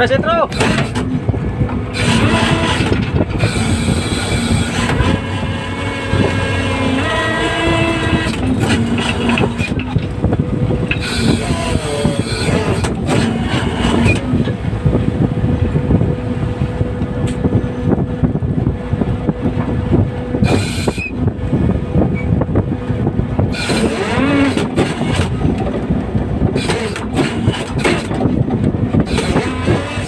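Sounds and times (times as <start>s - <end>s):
boat engine rumbling: 0.0s - 30.0s
crew calling out: 1.9s - 10.1s, 10.9s - 14.3s, 23.5s - 25.4s, 26.6s - 28.3s, 29.0s - 30.0s.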